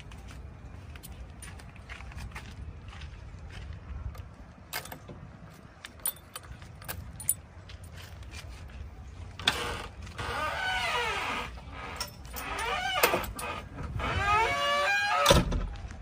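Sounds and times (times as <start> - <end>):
metallic clanks and rattles: 4.7 - 7.5, 11.9 - 14.0.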